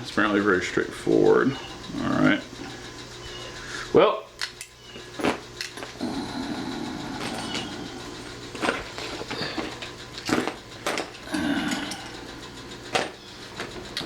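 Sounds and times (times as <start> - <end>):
packaging rustling: 8.5 - 11.1.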